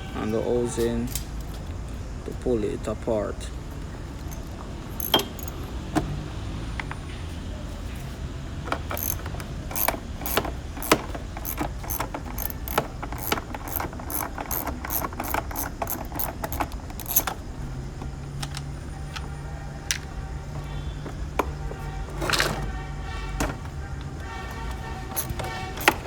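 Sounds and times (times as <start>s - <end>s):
hand tools clicking on plastic clips: 4.2s - 5.6s, 8.7s - 17.4s, 24.5s - 26.0s.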